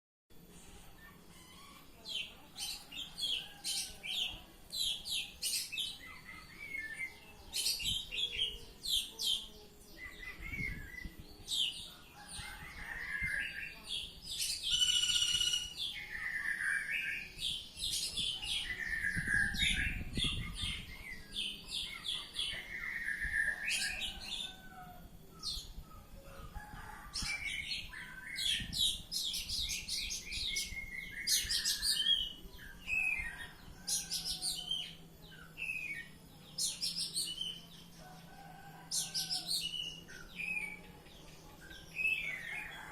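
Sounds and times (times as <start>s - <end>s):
songbird chirping and whistling: 14.4s - 24.4s, 27.2s - 37.7s.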